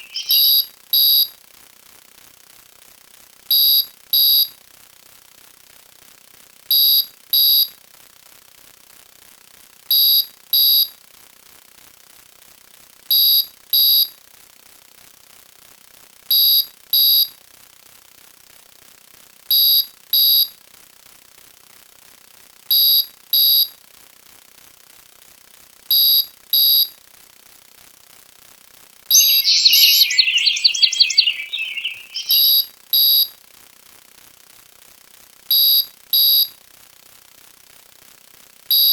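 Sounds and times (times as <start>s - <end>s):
rapid high chirps: 0.0s - 0.6s, 29.1s - 32.6s
short high electronic beeps: 29.1s - 32.6s.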